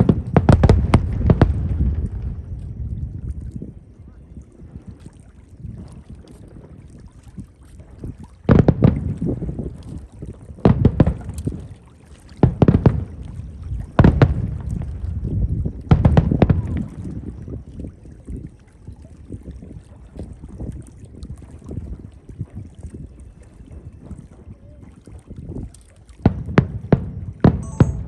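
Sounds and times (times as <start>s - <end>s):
fireworks booming overhead: 0.0s - 3.9s, 8.4s - 17.4s, 26.2s - 28.0s.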